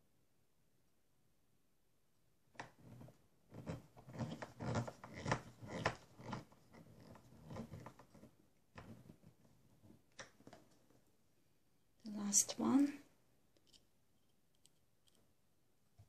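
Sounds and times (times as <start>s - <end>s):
screwdriver clicking and scraping: 2.8s - 8.3s, 13.6s - 15.2s.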